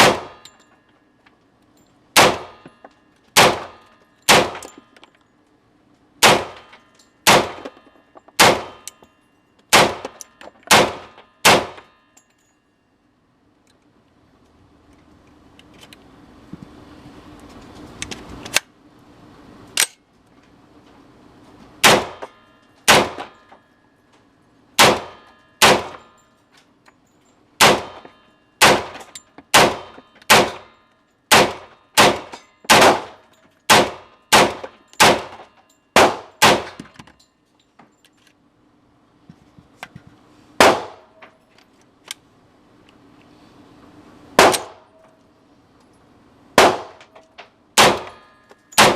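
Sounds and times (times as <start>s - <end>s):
pistol gunshots: 0.0s - 0.4s, 2.2s - 2.6s, 3.4s - 4.7s, 6.2s - 7.8s, 8.4s - 8.9s, 9.7s - 11.9s, 21.8s - 22.3s, 22.9s - 23.4s, 24.8s - 26.1s, 27.6s - 30.7s, 31.3s - 36.8s, 40.6s - 41.1s, 44.4s - 44.9s, 46.6s - 47.1s, 47.8s - 48.2s.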